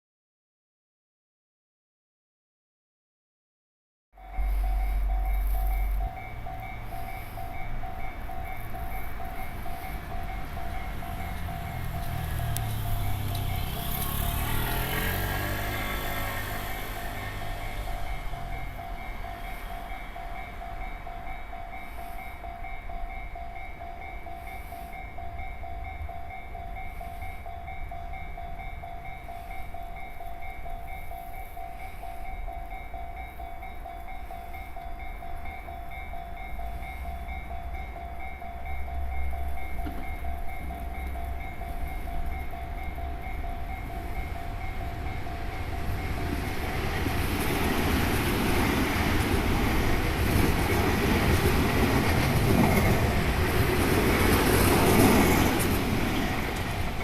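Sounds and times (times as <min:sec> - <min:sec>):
level crossing warning bell ringing: 0:04.2 - 0:57.0
train approaching: 0:04.2 - 0:57.0.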